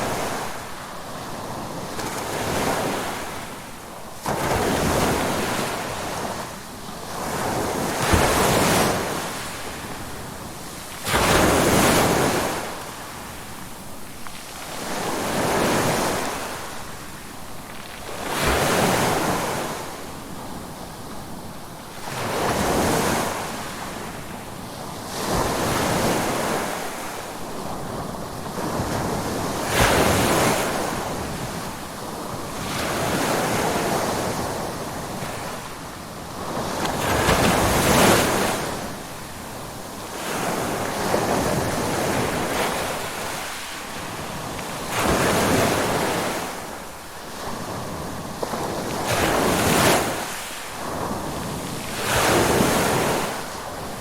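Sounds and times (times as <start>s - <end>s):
ocean waves breaking: 25.0s - 54.0s.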